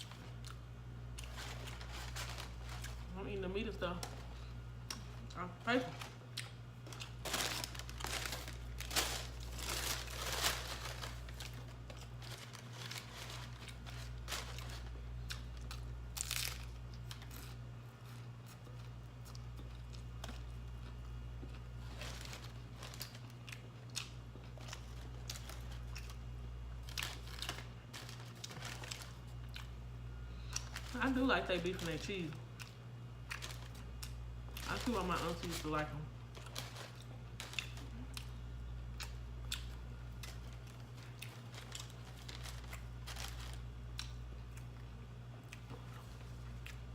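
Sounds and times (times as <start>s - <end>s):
steady low hum: 0.0s - 46.9s
paper wrappers crinkling: 1.2s - 4.5s, 6.8s - 17.6s, 21.8s - 23.6s, 24.5s - 26.2s, 26.8s - 29.7s, 30.4s - 32.4s, 33.3s - 38.2s, 40.2s - 43.8s
crunchy bites and chewing: 6.1s - 30.8s, 36.3s - 46.9s.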